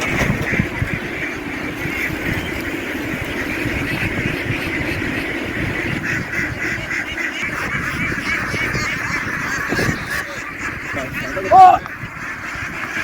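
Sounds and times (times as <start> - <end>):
flock of ducks quacking: 0.0 - 13.0.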